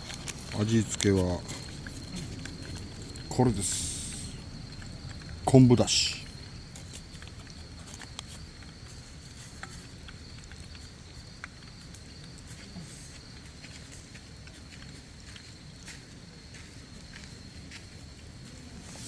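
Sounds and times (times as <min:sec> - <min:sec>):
low steady hiss: 0:00.0 - 0:14.3.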